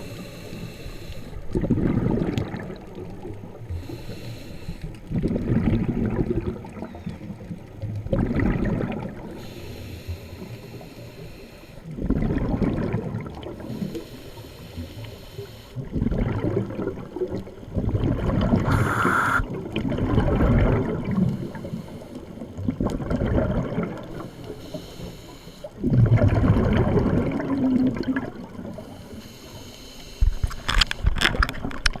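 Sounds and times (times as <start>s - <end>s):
regulator inhaling hiss: 0.0s - 1.4s, 3.8s - 5.0s, 9.4s - 11.9s, 13.6s - 15.8s, 18.7s - 19.5s, 21.2s - 22.3s, 24.2s - 25.7s, 28.8s - 30.5s
bubbly exhaled air underwater: 1.4s - 4.0s, 5.1s - 10.8s, 11.8s - 14.8s, 15.4s - 25.0s, 25.7s - 29.0s.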